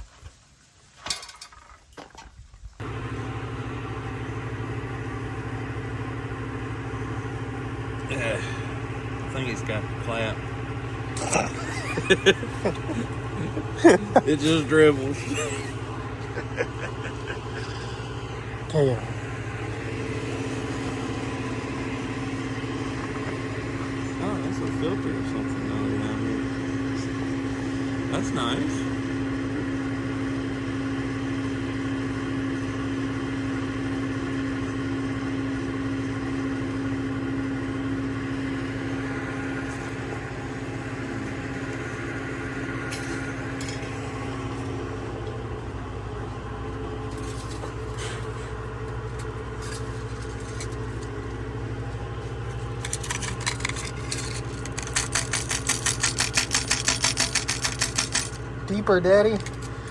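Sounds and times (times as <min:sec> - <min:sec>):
engine idling: 0:02.8 - 0:59.9
rapid rhythmic clatter: 0:54.2 - 0:58.4.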